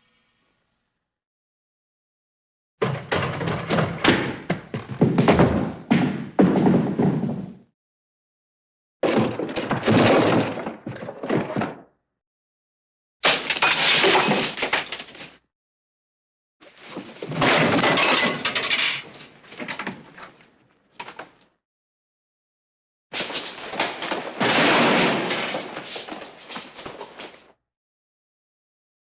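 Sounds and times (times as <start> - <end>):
things breaking and smashing: 9.0 - 11.8, 13.2 - 15.2, 17.2 - 19.7, 23.2 - 27.2.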